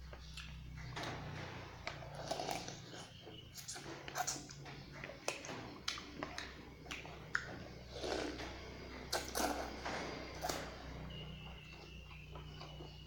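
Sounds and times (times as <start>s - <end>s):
mouth sounds of eating: 1.9s - 10.9s.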